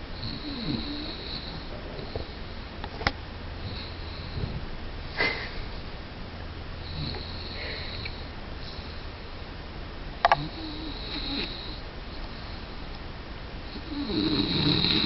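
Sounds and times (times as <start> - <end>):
steady low hum: 0.0 - 15.0
person snoring and snorting: 0.2 - 2.2, 10.3 - 11.8, 13.8 - 15.0.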